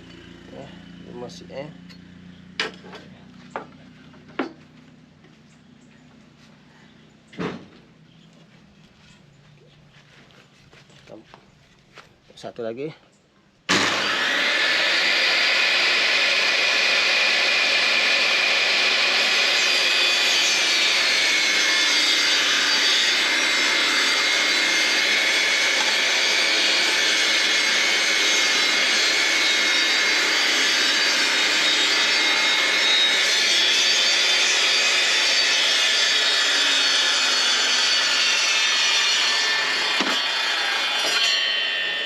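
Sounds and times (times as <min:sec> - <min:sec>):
table saw cutting wood: 0:13.7 - 0:42.0.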